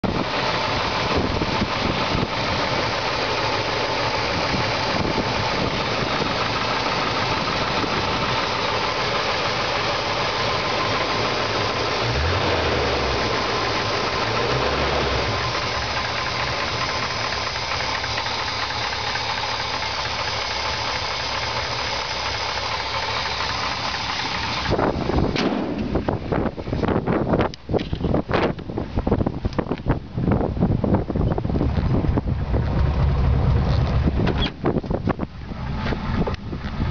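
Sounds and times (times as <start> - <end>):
engine knocking: 0.0 - 26.6
engine idling: 0.0 - 36.9.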